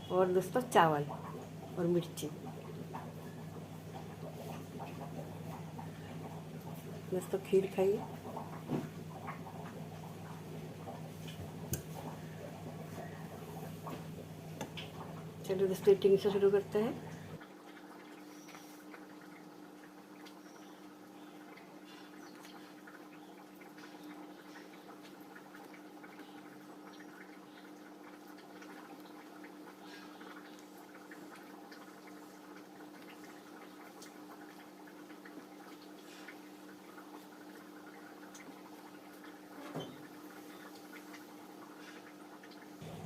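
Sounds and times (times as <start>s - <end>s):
low hum: 0.0s - 17.4s.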